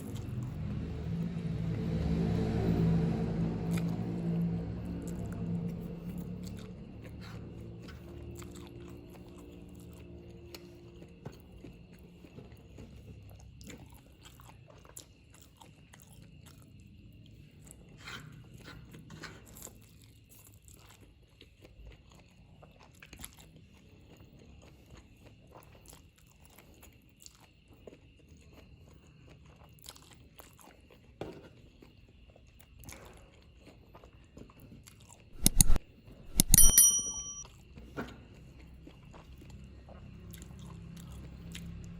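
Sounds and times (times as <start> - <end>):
person chewing noodles: 5.1 - 16.8, 19.5 - 31.0, 38.6 - 41.9.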